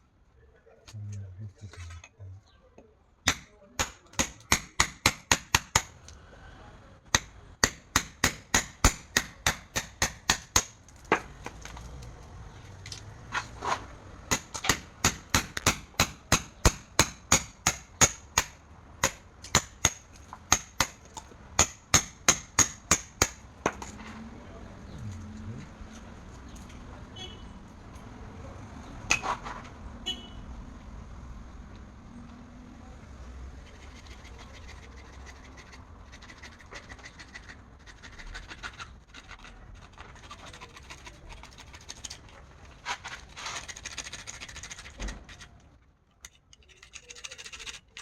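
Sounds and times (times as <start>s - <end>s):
hammering: 3.3s - 6.0s, 7.2s - 11.3s, 14.3s - 23.8s.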